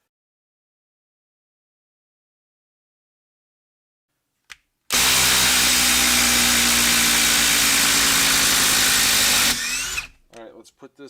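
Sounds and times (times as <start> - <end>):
impact driver hammering screw: 4.9 - 10.2.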